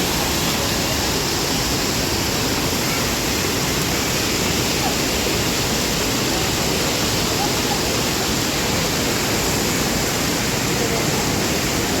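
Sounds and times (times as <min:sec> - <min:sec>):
waterfall and river rushing: 0:00.0 - 0:12.0.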